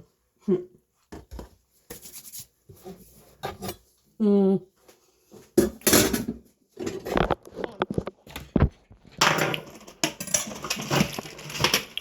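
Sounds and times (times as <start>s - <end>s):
kitchen knocks and clatters: 1.1s - 3.9s, 5.5s - 12.0s
rustling scraping noise: 1.9s - 3.8s, 9.8s - 12.0s.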